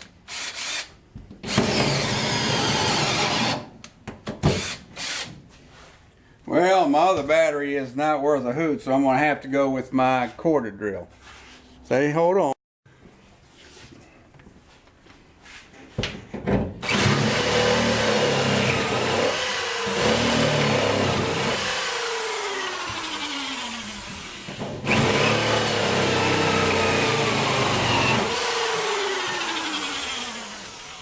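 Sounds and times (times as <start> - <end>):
electric drill boring through metal: 0.3 - 0.9, 1.5 - 3.6, 16.8 - 31.0.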